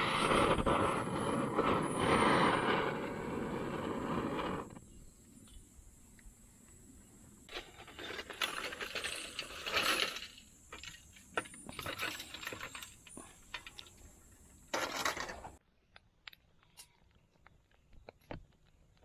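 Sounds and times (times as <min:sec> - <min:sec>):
small metal items clinking: 0:07.5 - 0:14.0, 0:14.6 - 0:15.6.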